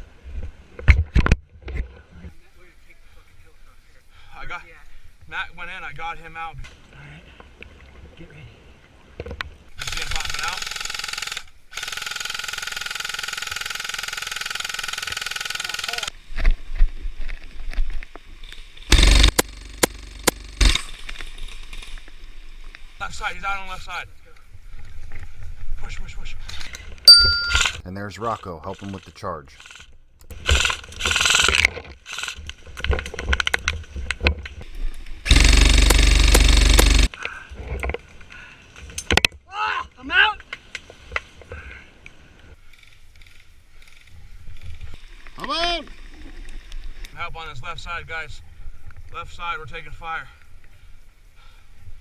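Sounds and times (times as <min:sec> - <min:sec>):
airsoft rifle full-auto burst: 0:09.8 - 0:16.1, 0:18.9 - 0:21.0, 0:29.6 - 0:32.4, 0:35.3 - 0:37.1
knocks and sharp clicks: 0:18.9 - 0:20.9, 0:35.3 - 0:37.1.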